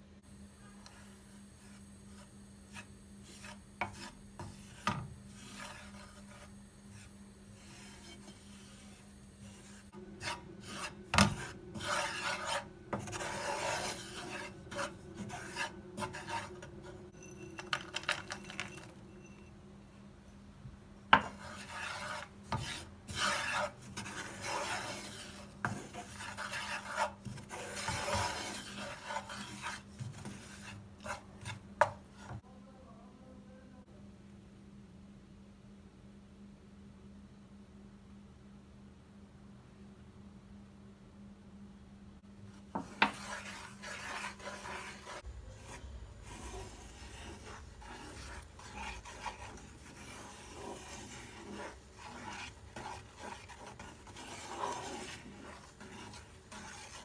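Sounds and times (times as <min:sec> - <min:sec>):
utensil scraping: 0:00.6 - 0:19.5, 0:21.2 - 0:32.4, 0:42.5 - 0:57.0
low steady hum: 0:32.4 - 0:57.0.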